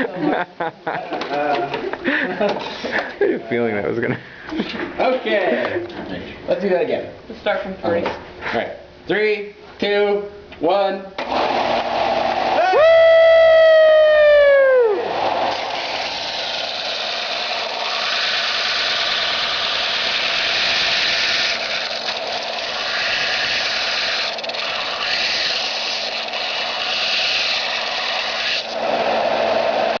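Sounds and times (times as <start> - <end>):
belt sander running: 11.2 - 12.9, 14.6 - 30.0.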